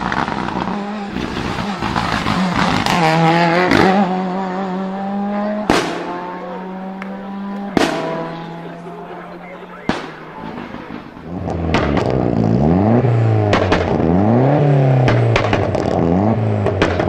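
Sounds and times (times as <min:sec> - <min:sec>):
car engine at steady revs: 0:00.0 - 0:17.0
car exhaust crackling: 0:00.0 - 0:17.0
sharp exhaust bang: 0:01.1 - 0:04.2, 0:05.6 - 0:06.4, 0:07.4 - 0:08.7.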